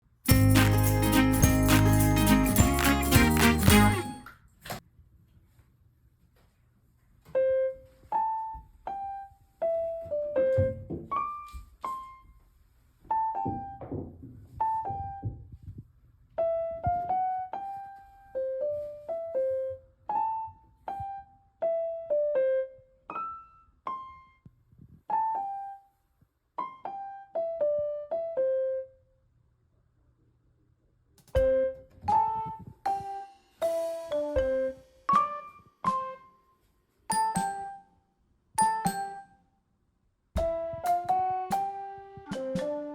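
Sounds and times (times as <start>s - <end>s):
simple piano melody: 0.3s - 4.3s.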